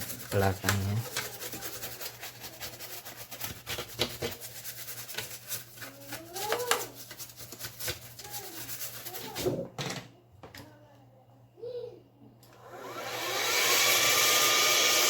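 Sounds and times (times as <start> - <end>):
wiping scrapes on plastic: 0.0 - 9.6.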